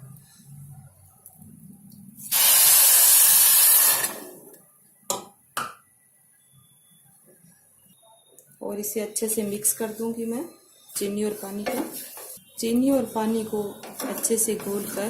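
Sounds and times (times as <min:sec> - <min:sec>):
water hissing in hot pan: 0:02.2 - 0:04.3.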